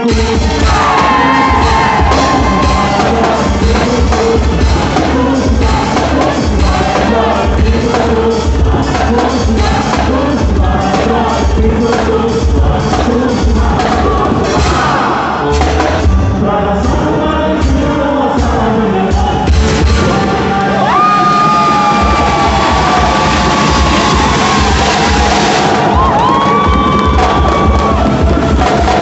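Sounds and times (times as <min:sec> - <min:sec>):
dance music with singing: 0:00.0 - 0:29.0
thumping bass beat: 0:00.0 - 0:29.0
people shouting: 0:00.6 - 0:03.4, 0:20.7 - 0:29.0.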